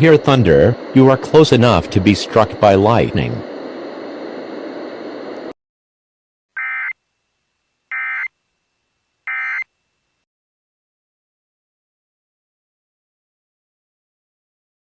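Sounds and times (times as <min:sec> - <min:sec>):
steady background noise: 0:00.0 - 0:05.6
digital data tone bursts: 0:06.6 - 0:07.0, 0:07.9 - 0:08.3, 0:09.3 - 0:09.7.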